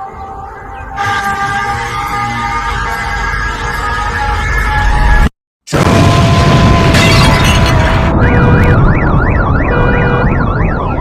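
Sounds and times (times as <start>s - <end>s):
emergency sirens wailing: 0.0s - 11.0s
loud explosion rumbling: 5.7s - 8.9s.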